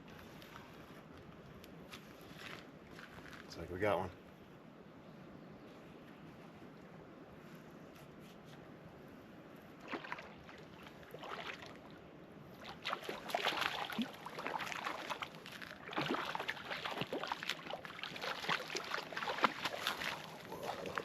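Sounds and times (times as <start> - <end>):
water splashing and sloshing: 9.6 - 21.0.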